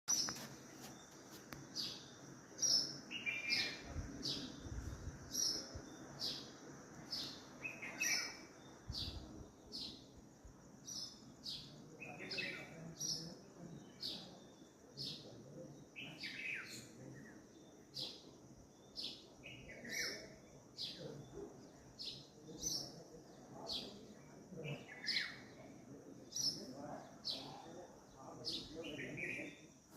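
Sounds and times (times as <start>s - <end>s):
birds chirping: 0.1s - 10.2s.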